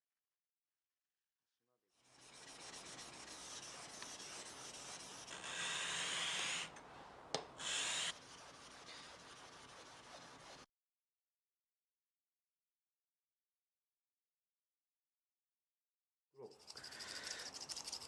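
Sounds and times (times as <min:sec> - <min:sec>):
blade scraping on whetstone: 0:02.1 - 0:06.7, 0:07.6 - 0:10.6.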